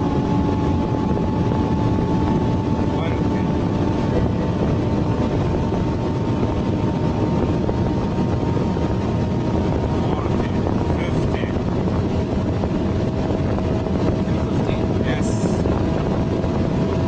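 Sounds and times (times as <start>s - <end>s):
car engine and road drone: 0.0s - 17.0s.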